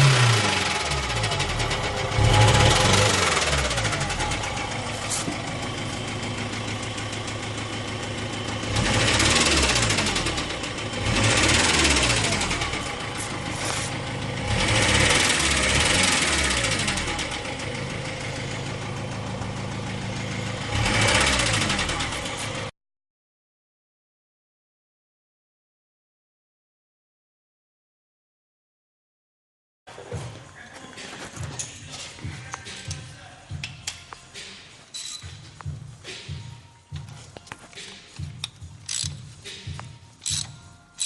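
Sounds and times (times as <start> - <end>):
diesel engine idling and revving: 0.0 - 22.7.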